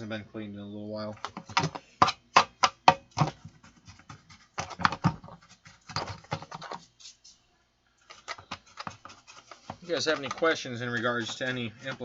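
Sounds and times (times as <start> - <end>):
brush scratching and clicking: 3.1 - 7.4, 8.1 - 12.0.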